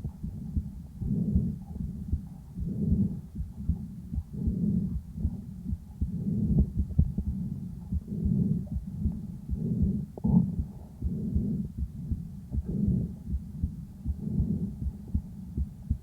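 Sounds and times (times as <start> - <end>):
heartbeat thuds: 0.0 - 16.0
breath sounds through stethoscope: 2.6 - 15.3.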